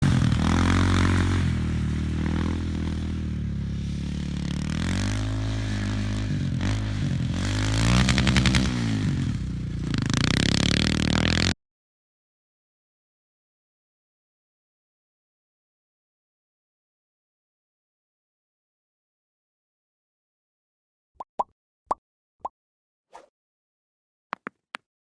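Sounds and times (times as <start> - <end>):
atv engine revving: 0.0 - 11.6.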